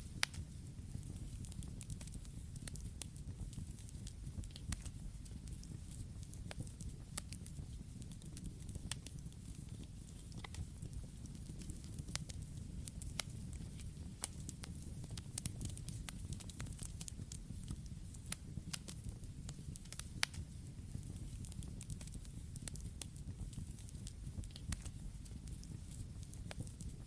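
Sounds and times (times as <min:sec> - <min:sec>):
burning wood crackling and popping: 0:00.0 - 0:27.0
low rush of flames: 0:00.0 - 0:27.0.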